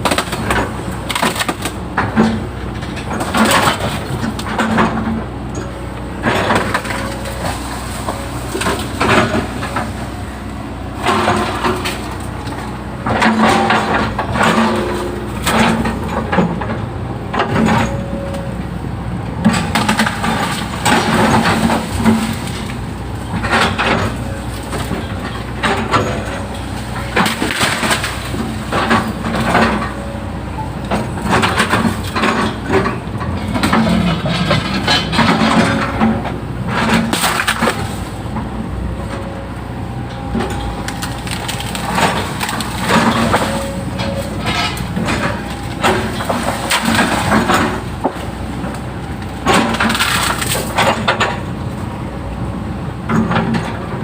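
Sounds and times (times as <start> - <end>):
excavator diesel engine running: 0.0 - 54.0
wood and roots crunching: 40.1 - 50.8.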